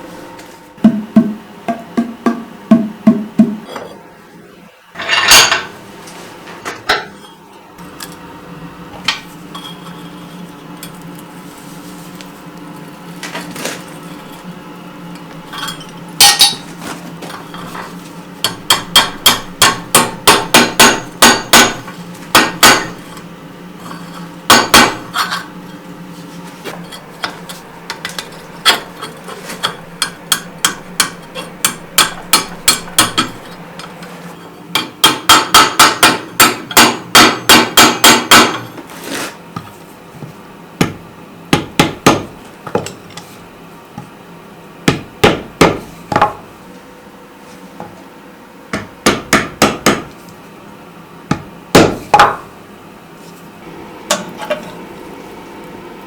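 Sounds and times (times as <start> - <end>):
hammer striking hot steel: 15.6 - 16.7, 18.4 - 23.2, 23.8 - 25.4, 27.2 - 34.0, 34.7 - 38.7.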